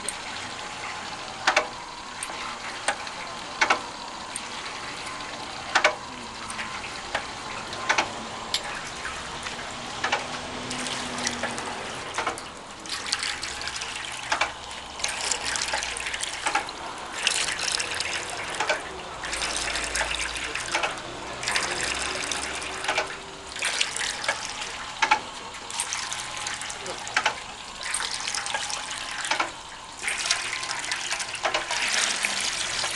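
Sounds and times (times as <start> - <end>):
mortar pump pushing water: 0.0 - 32.9
sharp clicks and knocks: 1.4 - 4.5, 5.7 - 6.0, 7.1 - 8.7, 9.4 - 10.4, 11.3 - 12.5, 14.3 - 14.6, 25.0 - 25.3, 27.2 - 27.4, 29.2 - 29.6
water gushing in surges: 4.4 - 32.9.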